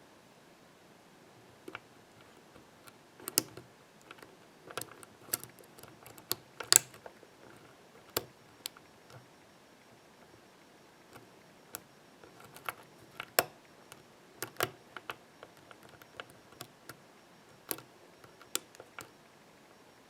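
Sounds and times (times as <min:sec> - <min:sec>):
lock pick metallic clicks: 0:01.7 - 0:09.2, 0:11.1 - 0:19.1
sharp padlock click: 0:03.2 - 0:07.0, 0:11.2 - 0:16.9, 0:17.6 - 0:19.1.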